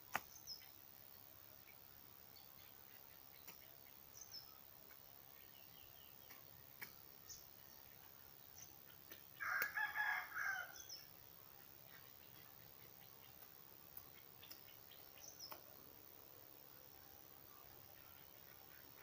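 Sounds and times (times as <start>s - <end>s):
rooster crowing: 9.4s - 11.0s.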